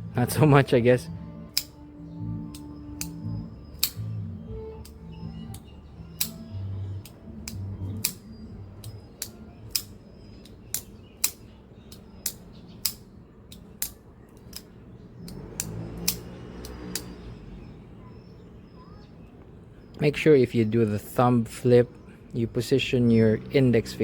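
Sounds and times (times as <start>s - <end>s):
folding knife clicking open and shut: 1.5s - 1.9s, 2.5s - 4.2s, 4.8s - 17.2s.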